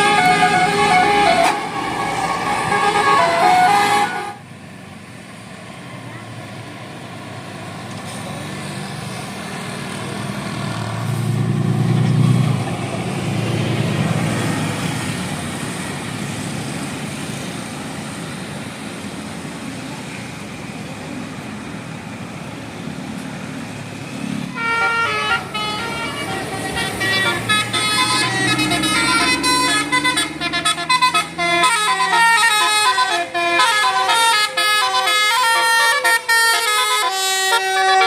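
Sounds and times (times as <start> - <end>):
musical bus horn tune: 0.0 - 4.5, 24.5 - 38.0
bus engine labouring uphill: 0.0 - 38.0.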